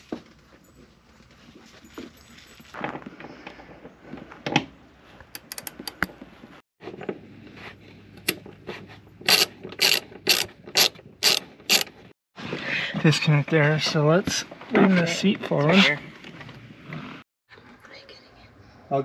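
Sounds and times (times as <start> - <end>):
ratchet wrench ratcheting: 9.3 - 11.9.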